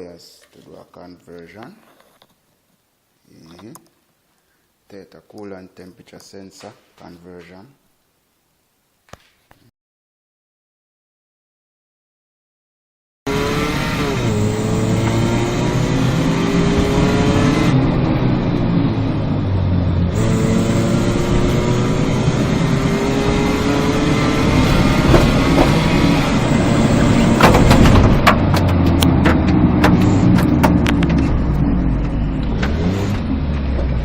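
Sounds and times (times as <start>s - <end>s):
car engine accelerating hard: 13.3s - 34.0s
sharp clicks or knocks: 25.0s - 26.0s, 27.4s - 31.4s.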